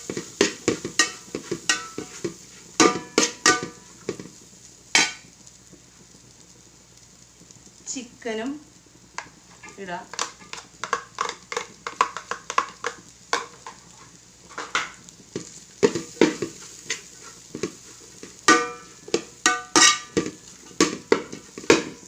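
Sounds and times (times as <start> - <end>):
spatula scraping a frying pan: 0.0 - 4.4, 9.5 - 22.0
faint sizzle: 0.0 - 22.0.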